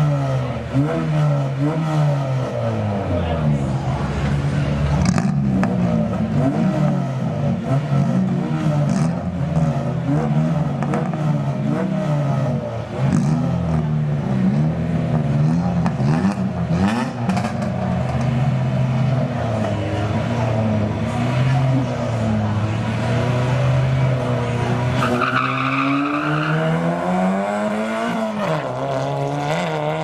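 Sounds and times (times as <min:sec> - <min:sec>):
race car engines idling and revving: 0:00.0 - 0:30.0.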